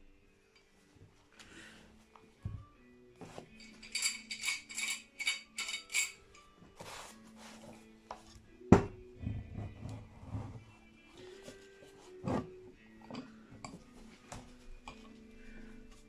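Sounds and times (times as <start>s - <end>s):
metal clamps clinking: 3.6s - 6.5s, 13.0s - 13.9s.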